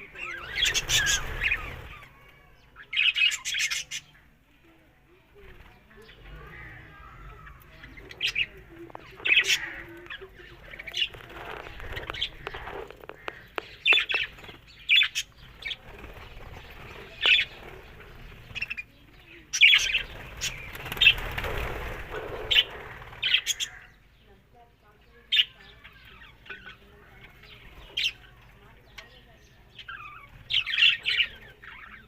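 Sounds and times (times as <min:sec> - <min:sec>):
parrots chirping and squawking: 0:00.0 - 0:04.2, 0:06.2 - 0:18.9, 0:19.6 - 0:24.0, 0:29.7 - 0:32.0.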